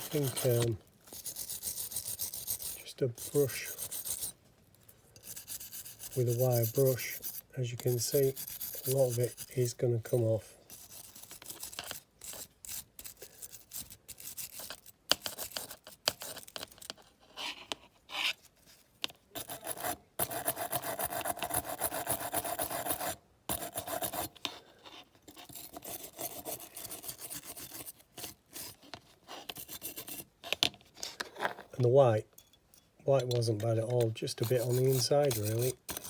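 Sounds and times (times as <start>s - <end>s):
wire brush scrubbing metal: 0.0s - 4.4s, 5.2s - 13.2s, 33.2s - 36.0s.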